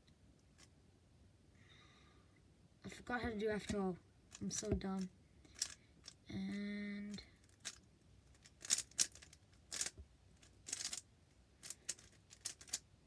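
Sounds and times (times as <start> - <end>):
speed cube plastic clacks: 3.6 - 6.2, 7.4 - 11.0, 11.6 - 12.9.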